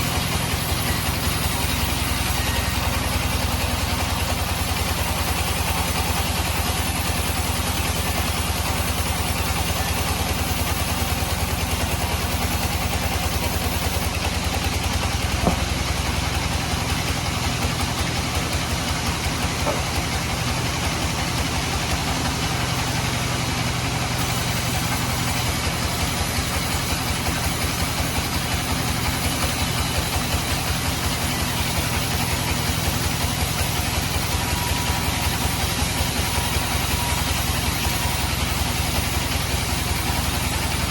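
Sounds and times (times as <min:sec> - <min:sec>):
band sawmill thrumming: 0:00.0 - 0:40.9
sharp knock: 0:15.4 - 0:15.9, 0:19.6 - 0:20.0.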